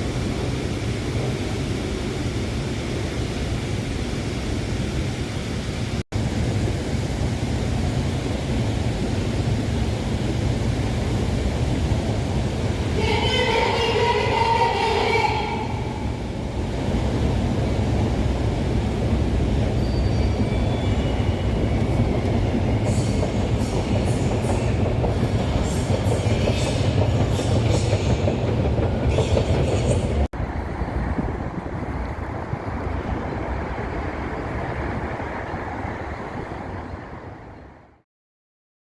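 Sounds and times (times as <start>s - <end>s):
metro train rumbling on rails: 0.0s - 38.0s
train wheels squealing: 19.6s - 24.8s.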